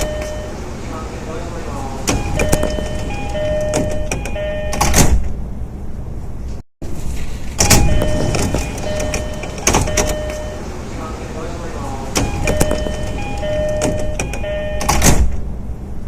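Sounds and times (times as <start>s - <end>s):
electronic train door chime: 0.0s - 0.7s, 2.1s - 5.0s, 7.6s - 10.8s, 12.1s - 15.1s
loud door clunk: 2.0s - 5.4s, 7.1s - 10.6s, 12.1s - 15.5s
door mechanism knocks: 2.1s - 5.4s, 7.6s - 10.5s, 12.2s - 15.5s.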